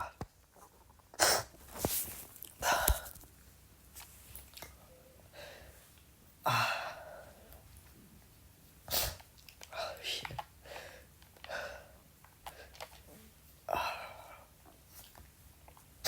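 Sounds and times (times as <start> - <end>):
quiet breathing: 4.8 - 7.9, 9.6 - 15.0.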